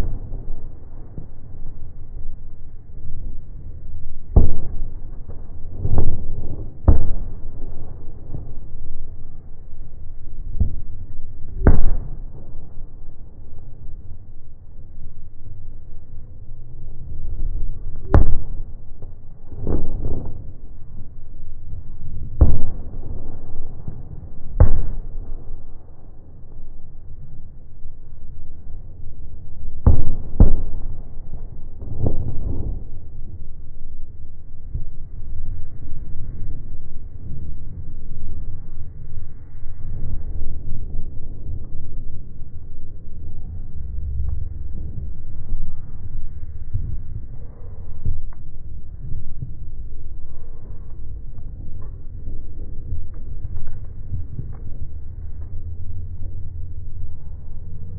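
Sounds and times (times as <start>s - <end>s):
fireworks booming: 0.0s - 1.8s, 4.3s - 9.1s, 10.5s - 13.4s, 18.0s - 21.1s, 22.2s - 26.3s, 29.8s - 33.6s
low rumble: 0.0s - 57.9s.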